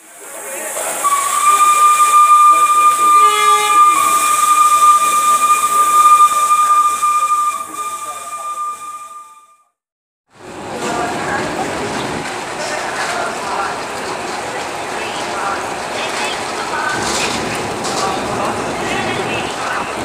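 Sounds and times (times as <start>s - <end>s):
locomotive air horn blast: 0.6s - 9.7s.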